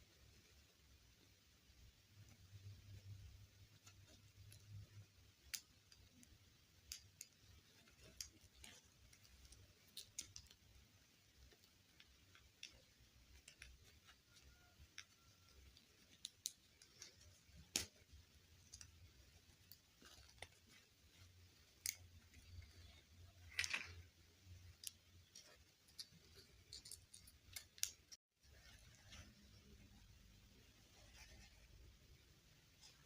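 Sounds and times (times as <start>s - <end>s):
small plastic pieces clicking: 4.4s - 20.8s, 21.6s - 28.2s.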